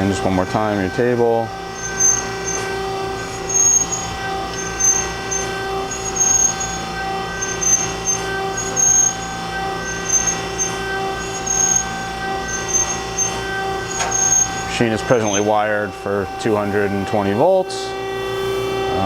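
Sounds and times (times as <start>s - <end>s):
surface grinder humming and whining: 0.0s - 19.0s.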